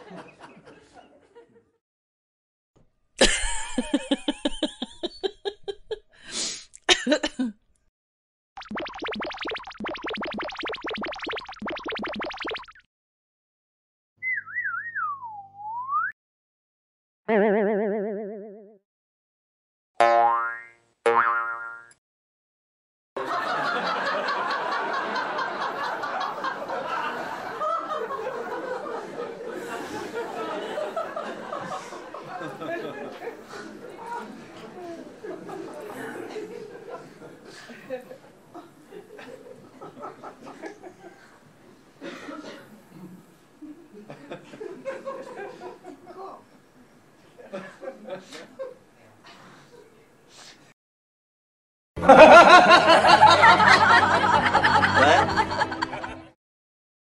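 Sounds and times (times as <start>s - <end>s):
group of people laughing: 0.0s - 1.8s, 3.2s - 6.0s, 23.2s - 41.4s, 43.6s - 46.4s, 47.4s - 48.8s, 52.0s - 56.4s
cartoon boing: 8.6s - 12.8s, 17.3s - 18.8s, 20.0s - 22.0s
rhythmic laugh bursts: 52.1s - 56.2s.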